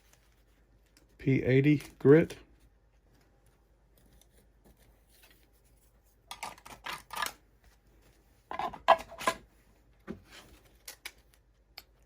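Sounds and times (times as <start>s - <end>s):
clicks and scraping of plastic tabs: 6.3s - 7.4s.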